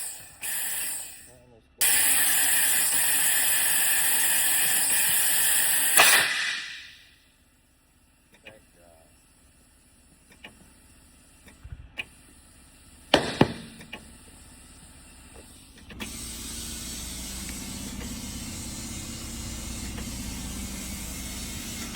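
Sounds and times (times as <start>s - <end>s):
compressed air hissing: 0.0s - 7.1s, 10.3s - 21.9s
sharp loud pops: 5.9s - 7.0s, 13.1s - 13.8s.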